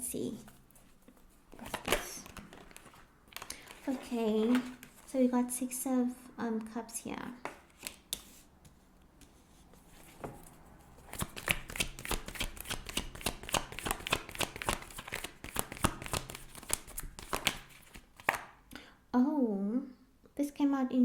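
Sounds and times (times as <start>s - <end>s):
cards being shuffled: 0.4s - 5.2s, 7.4s - 8.5s, 11.0s - 18.6s.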